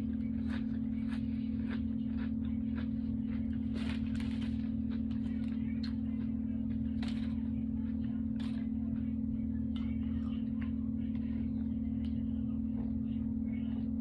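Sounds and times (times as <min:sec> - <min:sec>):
person chewing crunchy food: 0:00.0 - 0:09.2
steady low hum: 0:00.0 - 0:14.0.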